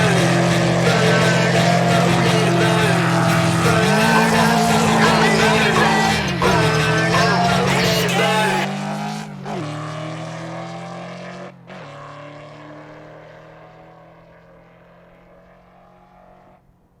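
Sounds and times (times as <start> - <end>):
car engine running: 0.0 - 9.2.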